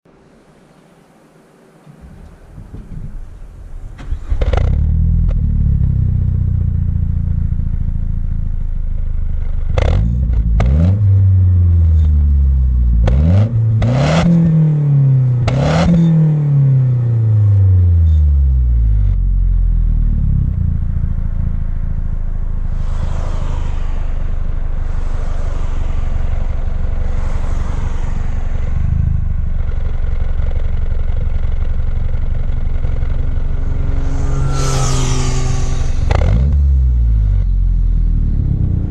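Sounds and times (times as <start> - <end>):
car engine idling and revving: 1.8 - 38.9
soft hissing swells: 21.6 - 30.4, 32.5 - 37.1.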